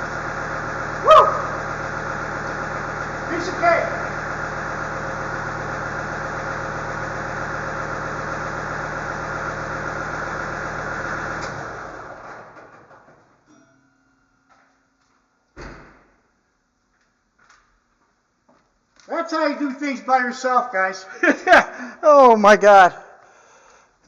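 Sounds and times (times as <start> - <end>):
motor humming and winding down: 0.0 - 12.6.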